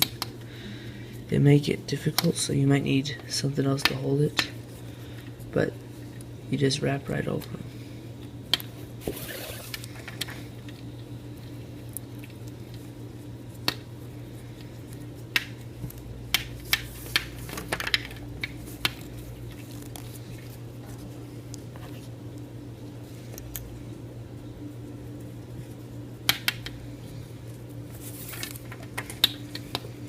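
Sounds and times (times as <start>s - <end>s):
low steady hum: 0.0s - 30.0s
cord rustling: 16.9s - 22.2s.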